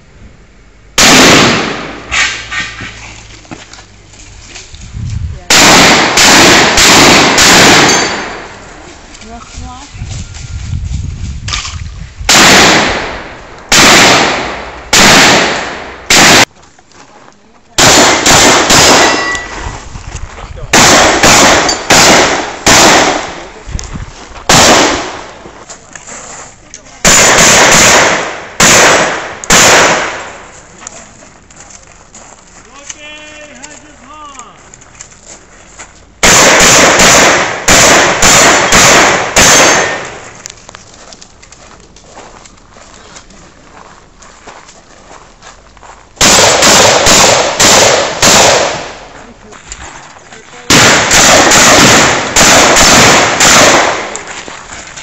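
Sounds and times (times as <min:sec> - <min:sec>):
shotgun shots echoing: 0:01.0 - 0:02.5, 0:05.5 - 0:08.6, 0:12.3 - 0:16.5, 0:17.8 - 0:19.6, 0:20.7 - 0:23.6, 0:24.5 - 0:25.4, 0:27.0 - 0:30.5, 0:36.2 - 0:40.3, 0:46.2 - 0:49.0, 0:50.7 - 0:54.3.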